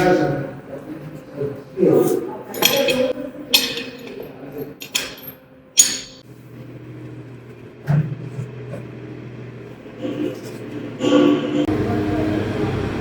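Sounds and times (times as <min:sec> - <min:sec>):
metal parts clinking: 0:02.5 - 0:06.2.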